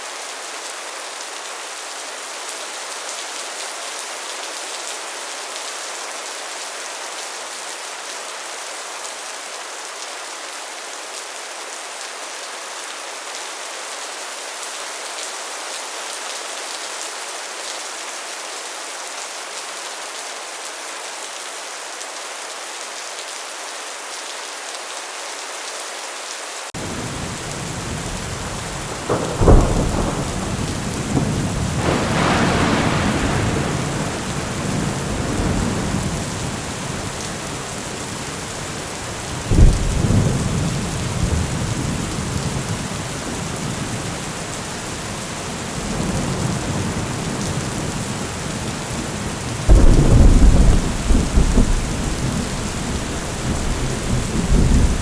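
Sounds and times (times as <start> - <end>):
heavy rain on a metal roof: 0.0 - 55.0
thunderclaps: 26.8 - 44.2, 45.8 - 55.0
rolling thunder rumble: 26.8 - 44.4, 45.8 - 55.0.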